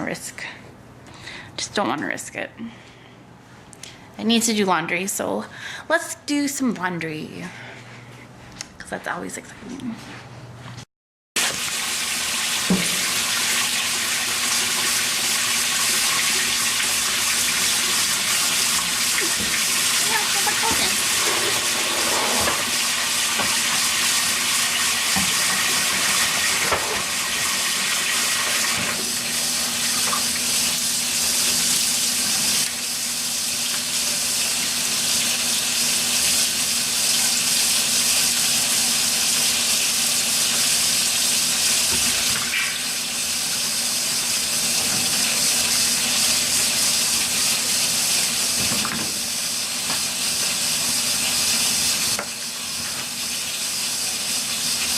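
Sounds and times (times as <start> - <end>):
washing machine filling with water: 11.4 - 54.9.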